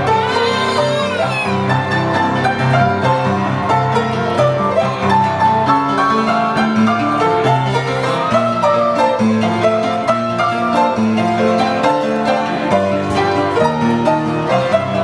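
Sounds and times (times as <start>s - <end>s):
instrumental melody: 0.0s - 15.0s.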